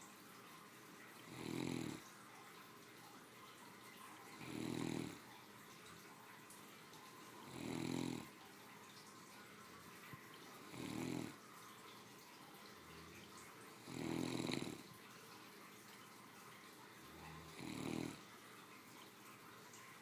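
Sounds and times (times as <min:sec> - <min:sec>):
dog snoring: 0:01.2 - 0:02.0, 0:04.4 - 0:05.2, 0:07.4 - 0:08.4, 0:10.6 - 0:11.4, 0:12.9 - 0:14.9, 0:17.1 - 0:18.2.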